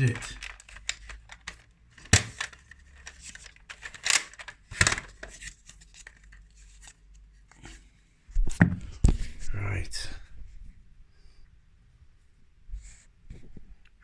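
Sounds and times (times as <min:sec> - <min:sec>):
plastic rustling: 0:00.0 - 0:07.0
plastic toy blasters clicking: 0:00.1 - 0:05.3.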